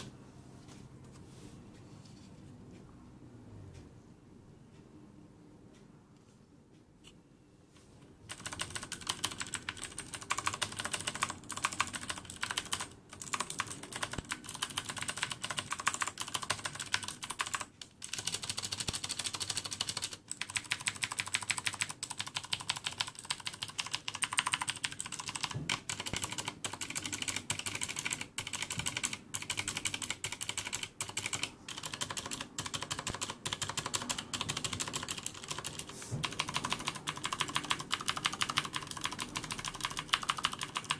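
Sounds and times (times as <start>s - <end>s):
fast typing on clicky keyboard: 8.3s - 40.9s.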